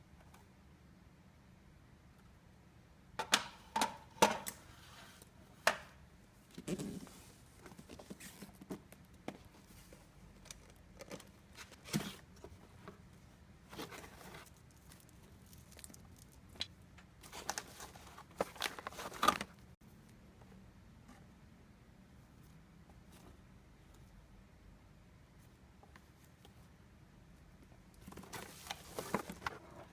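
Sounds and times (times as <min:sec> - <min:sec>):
rustles and crinkles: 0:06.4 - 0:21.3, 0:27.4 - 0:29.9.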